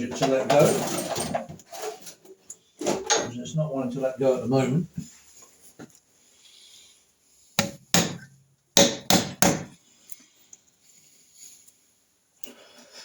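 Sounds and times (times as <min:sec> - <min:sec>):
hammer striking metal: 0:07.6 - 0:09.8.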